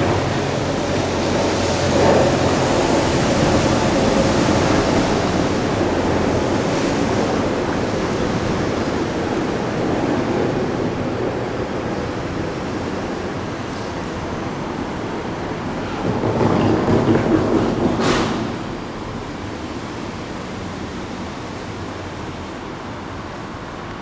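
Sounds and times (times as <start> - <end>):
train running past: 0.0 - 24.0.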